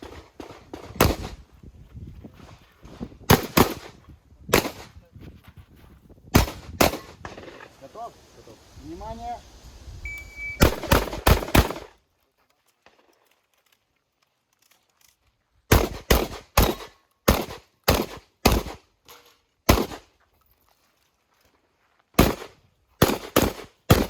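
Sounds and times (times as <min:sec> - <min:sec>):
shotgun shots: 0:00.0 - 0:01.4, 0:03.3 - 0:05.0, 0:06.3 - 0:07.4, 0:10.6 - 0:12.0, 0:15.7 - 0:18.8, 0:19.7 - 0:20.1, 0:22.2 - 0:24.0.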